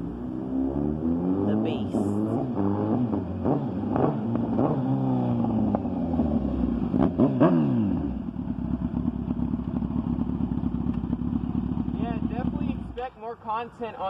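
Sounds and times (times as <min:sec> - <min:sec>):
motorcycle engine revving: 0:00.0 - 0:13.0
motorcycle engine idling: 0:03.3 - 0:14.0.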